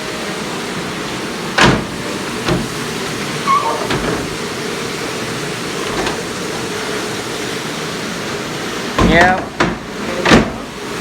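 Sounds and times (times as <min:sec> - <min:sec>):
dishwasher spraying water: 0:00.0 - 0:11.0.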